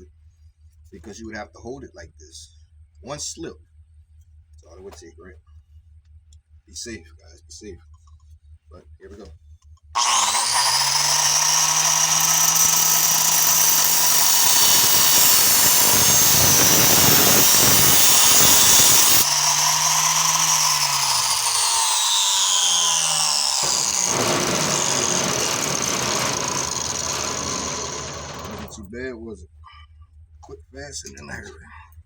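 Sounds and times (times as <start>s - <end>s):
angle grinder cutting metal: 10.0s - 28.8s.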